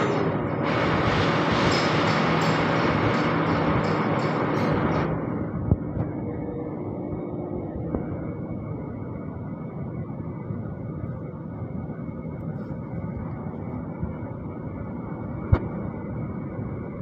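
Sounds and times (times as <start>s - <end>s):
metal lathe running: 0.0s - 5.6s.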